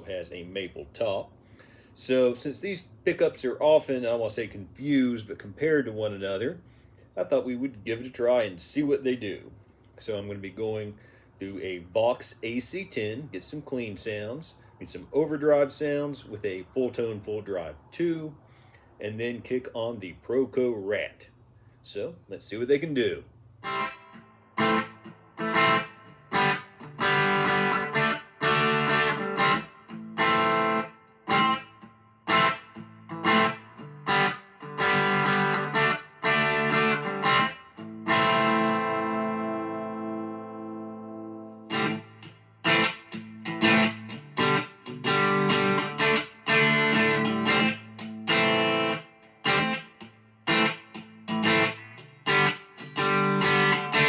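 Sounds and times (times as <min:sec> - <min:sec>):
electric guitar strummed chords: 0:23.6 - 0:54.0.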